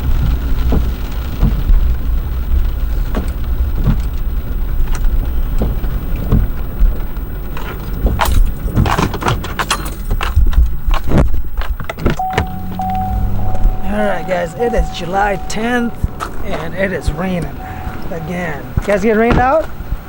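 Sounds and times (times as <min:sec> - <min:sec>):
rain falling: 0:00.0 - 0:10.0.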